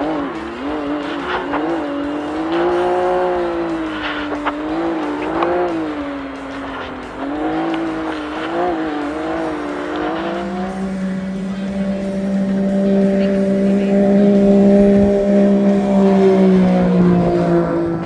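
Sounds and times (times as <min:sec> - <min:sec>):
engine racing: 0:00.0 - 0:18.0
steady hum: 0:10.4 - 0:18.0.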